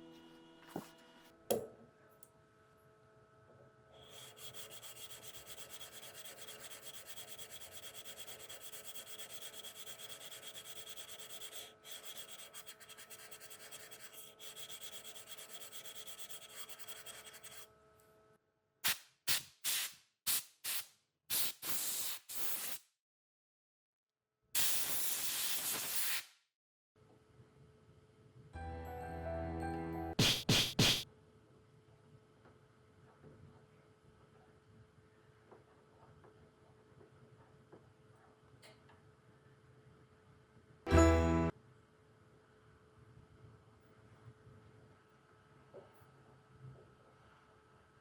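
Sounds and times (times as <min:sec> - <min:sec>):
knock: 0:01.5 - 0:01.8, 0:30.2 - 0:31.0.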